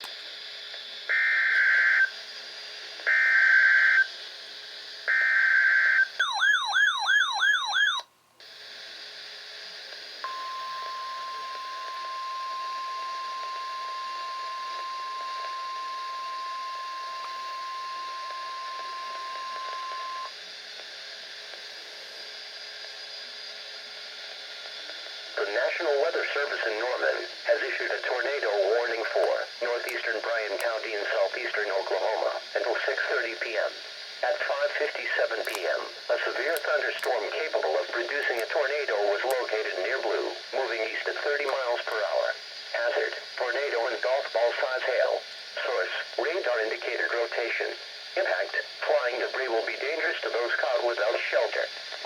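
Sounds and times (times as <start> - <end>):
radio hiss: 0.0 - 6.2, 8.4 - 52.0
steady single-pitch alarm tone: 3.1 - 4.1, 5.0 - 8.0, 10.2 - 20.4.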